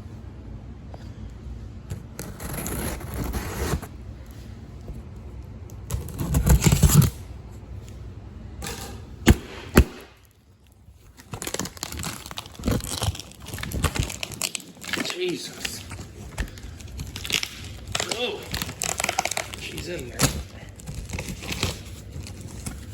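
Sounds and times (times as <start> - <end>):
cardboard scraping and crinkling: 1.9 - 3.9, 5.9 - 7.2, 11.2 - 22.9
packing tape tearing: 1.9 - 3.9, 5.8 - 7.2, 11.1 - 22.9.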